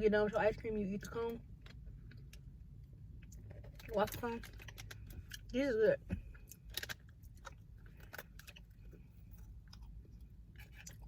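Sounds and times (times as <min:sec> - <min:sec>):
person chewing crunchy snack: 0:06.4 - 0:11.0.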